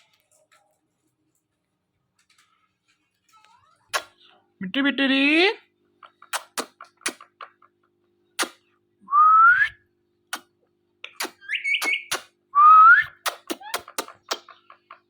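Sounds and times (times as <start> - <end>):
parakeet chirpy call: 11.3 - 12.2
parakeet rising whistle: 11.4 - 13.1.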